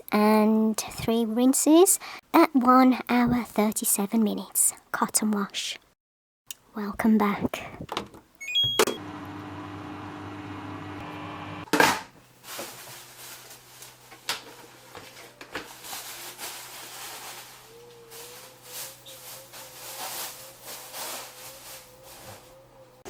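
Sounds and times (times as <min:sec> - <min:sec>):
washing machine beeps: 0:08.4 - 0:09.0
washing machine humming: 0:08.4 - 0:11.7.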